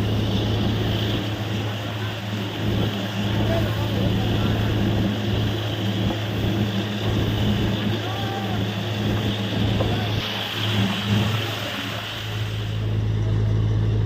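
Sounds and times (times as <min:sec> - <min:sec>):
loud even hiss: 0:00.0 - 0:13.6
drilling rig engine running: 0:00.0 - 0:14.0.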